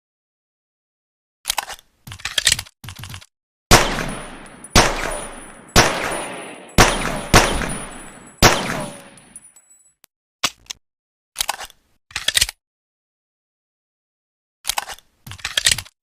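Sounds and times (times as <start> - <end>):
pistol shots echoing: 3.7 - 9.4.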